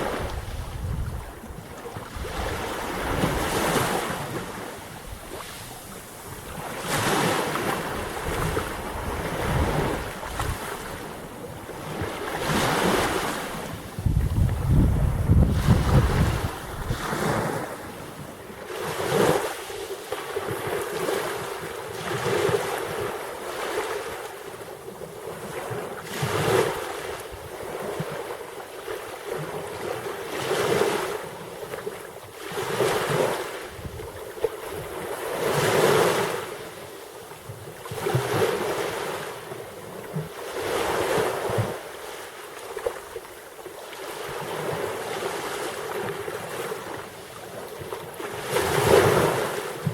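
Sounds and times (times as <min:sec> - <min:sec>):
waves breaking: 0:00.0 - 0:49.9.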